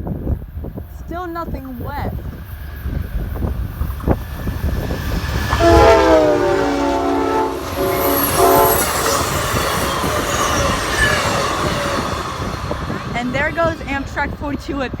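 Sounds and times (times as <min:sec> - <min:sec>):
train rumbling: 0:00.0 - 0:15.0
train horn blasts: 0:05.5 - 0:10.8.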